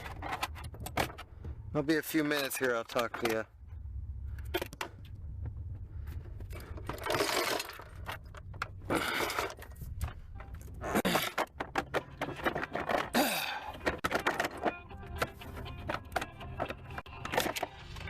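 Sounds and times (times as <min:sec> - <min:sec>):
low steady hum: 0:00.0 - 0:11.0
metal tools clinking and scraping: 0:02.0 - 0:03.4, 0:06.1 - 0:18.0.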